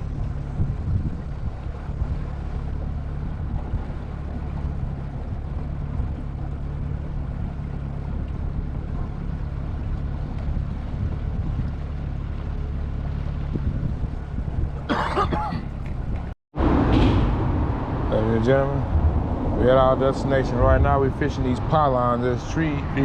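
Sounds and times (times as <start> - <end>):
outboard motor running: 0.0 - 16.3, 17.5 - 23.0
rush of wind and water: 0.0 - 23.0.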